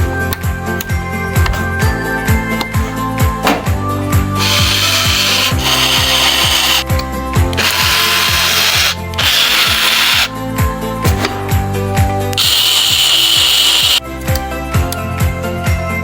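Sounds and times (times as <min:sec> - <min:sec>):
background music with thumping beat: 0:00.0 - 0:16.0
hissing whir: 0:04.4 - 0:06.8, 0:07.6 - 0:10.3, 0:12.4 - 0:14.0.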